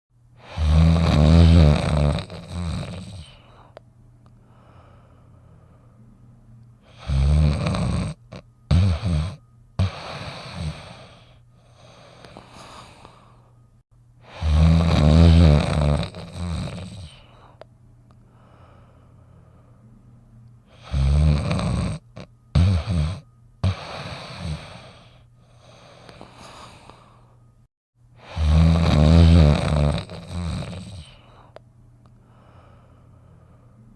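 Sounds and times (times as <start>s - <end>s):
dog snoring: 0.4s - 3.8s, 6.8s - 13.4s, 14.2s - 17.6s, 20.7s - 27.2s, 28.2s - 31.6s.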